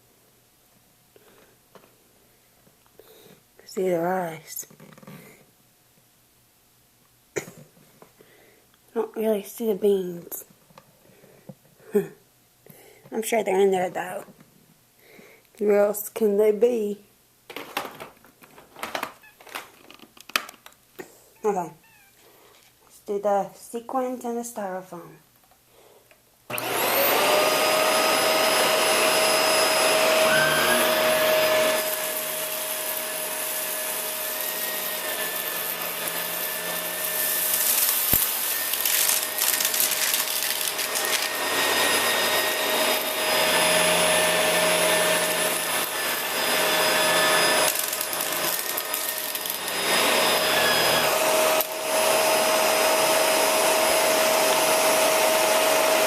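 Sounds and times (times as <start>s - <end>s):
vacuum cleaner whining: 26.5s - 56.0s
debris crackling in vacuum: 37.2s - 41.4s.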